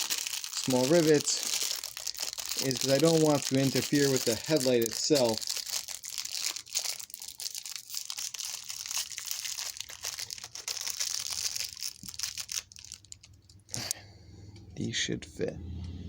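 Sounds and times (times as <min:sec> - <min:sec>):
plastic packaging crinkling: 0:00.0 - 0:13.9.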